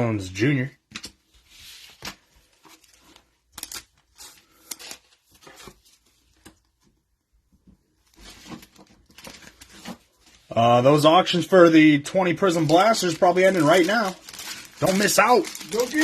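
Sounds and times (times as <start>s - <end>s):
paper wrapper tearing and rustling: 1.7s - 6.0s, 12.3s - 16.0s.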